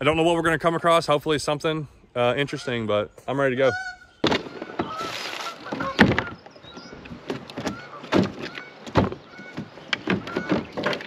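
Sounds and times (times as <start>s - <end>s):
kayak gear knocking and clunking: 4.2s - 11.0s.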